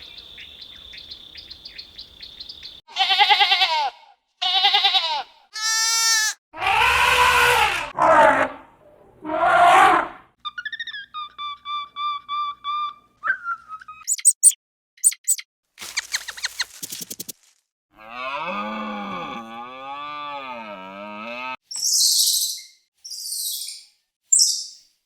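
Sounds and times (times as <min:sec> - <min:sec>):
high chirps: 0:13.8 - 0:17.3, 0:21.7 - 0:24.8
short squeaky animal notes: 0:14.0 - 0:15.4
cow mooing: 0:18.0 - 0:21.6.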